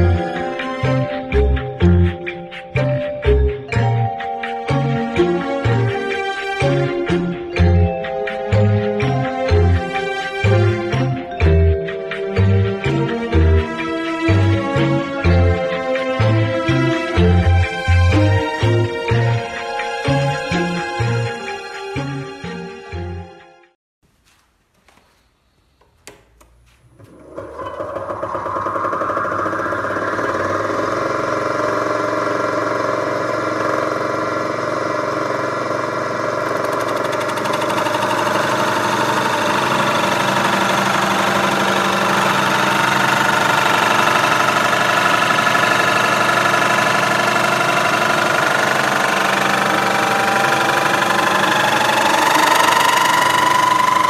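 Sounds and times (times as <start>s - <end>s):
clicks: 25.8s - 27.2s
whining tone: 27.0s - 54.0s
lathe running and cutting: 27.1s - 54.0s.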